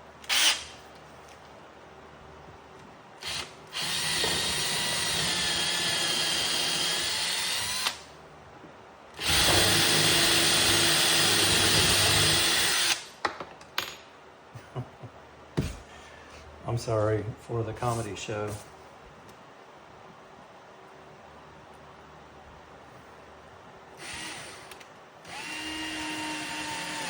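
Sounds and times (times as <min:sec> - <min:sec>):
power drill running: 0:03.2 - 0:08.0, 0:09.2 - 0:13.0, 0:24.0 - 0:27.0.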